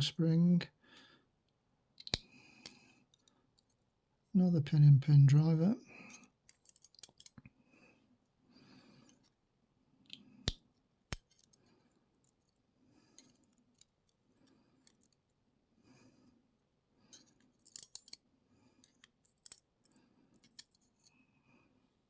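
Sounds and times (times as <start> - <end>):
lock pins clicking: 2.0 - 3.7, 6.1 - 7.4, 17.2 - 18.2.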